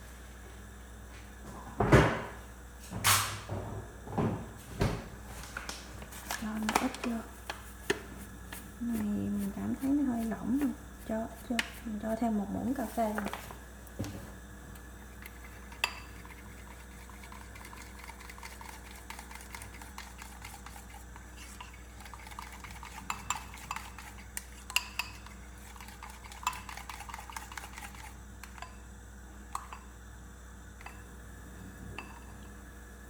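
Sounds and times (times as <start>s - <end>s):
utensil stirring batter in bowl: 6.2s - 13.6s, 15.0s - 28.8s
utensil clinking against bowl: 15.2s - 28.8s, 29.5s - 29.9s.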